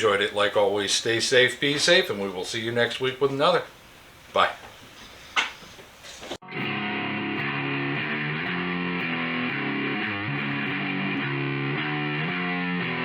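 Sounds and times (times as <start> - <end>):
distorted electric guitar music: 6.4 - 13.0.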